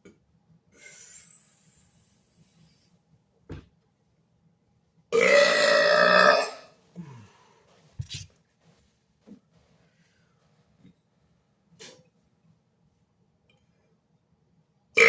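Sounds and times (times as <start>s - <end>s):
man belching loudly: 5.2s - 6.6s.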